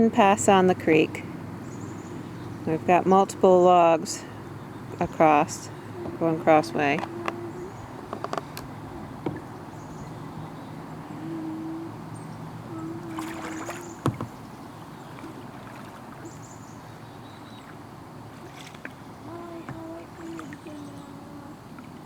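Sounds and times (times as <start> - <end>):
water sloshing against hull: 0.0 - 22.0
paddle strokes: 4.9 - 22.0.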